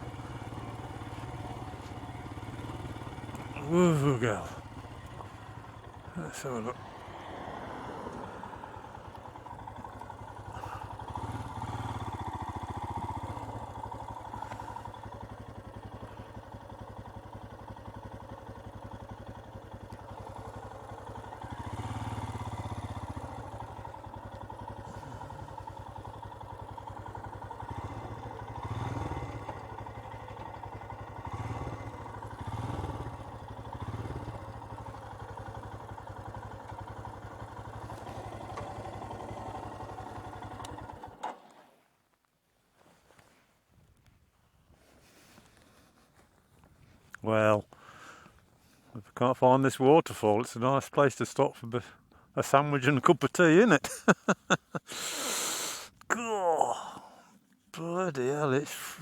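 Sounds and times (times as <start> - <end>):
motorcycle engine running: 0.0 - 41.2.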